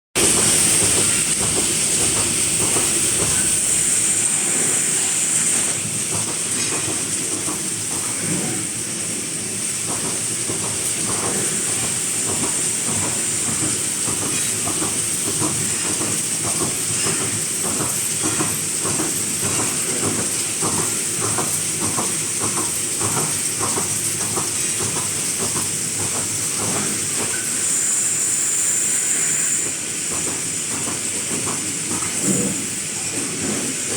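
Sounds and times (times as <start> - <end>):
welding machine clacks: 0.2 - 8.4, 9.0 - 27.5
welding machine hissing: 0.2 - 33.9.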